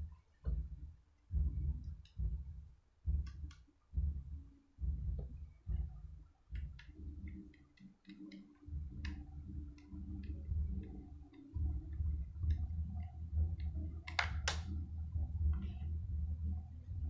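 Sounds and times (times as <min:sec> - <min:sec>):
low handling rumble: 0:08.7 - 0:17.0
small plastic parts clicking: 0:14.0 - 0:14.7.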